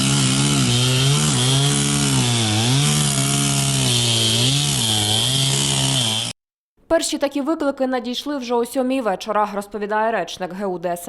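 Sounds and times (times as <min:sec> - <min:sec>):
chainsaw cutting wood: 0:00.0 - 0:06.4.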